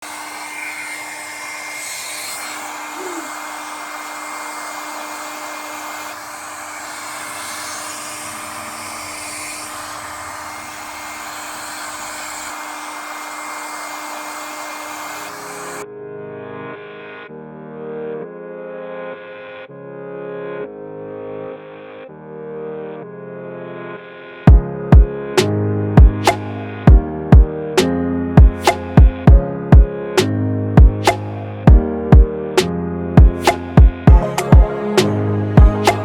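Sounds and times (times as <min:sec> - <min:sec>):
hair dryer running: 0:00.0 - 0:15.8, 0:33.3 - 0:36.0
music: 0:15.7 - 0:36.0.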